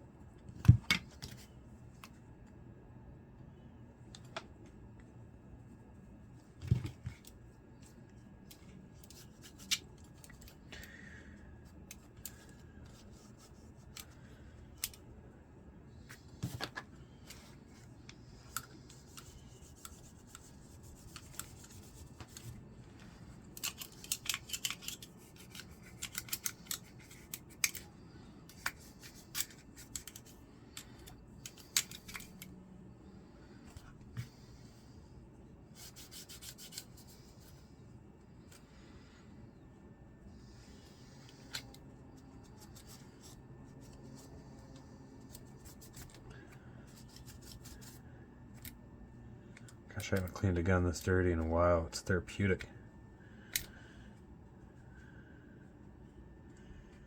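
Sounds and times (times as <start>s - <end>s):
pistol parts clicking: 23.5s - 27.9s, 28.5s - 32.5s, 53.5s - 53.7s.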